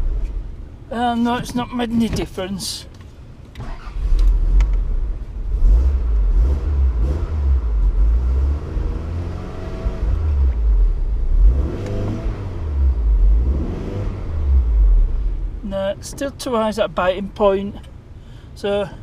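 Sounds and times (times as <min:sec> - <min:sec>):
heavy low rumble: 0:00.0 - 0:18.3
car engine revving: 0:03.6 - 0:15.7.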